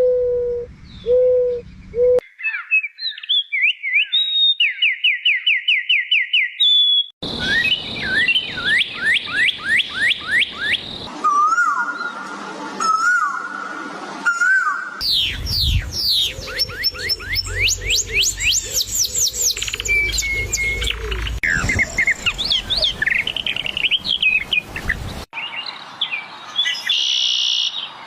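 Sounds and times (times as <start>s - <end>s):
low bird cooing: 0.0s - 2.2s, 15.8s - 23.8s
rising whistled bird notes: 0.0s - 12.2s, 12.8s - 25.7s.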